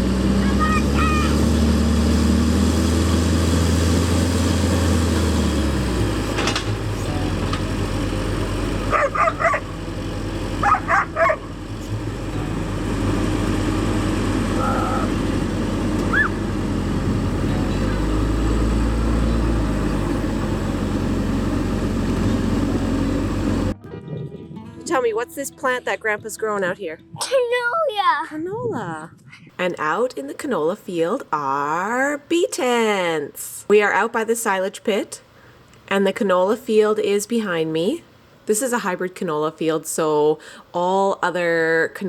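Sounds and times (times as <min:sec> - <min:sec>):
low engine running: 0:00.0 - 0:26.8
dog barking: 0:08.9 - 0:09.7, 0:10.6 - 0:11.5.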